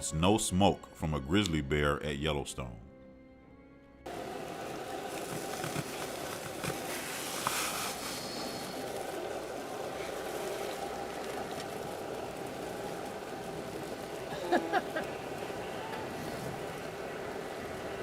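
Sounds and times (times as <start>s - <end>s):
outdoor rumble and hiss: 4.1s - 18.0s.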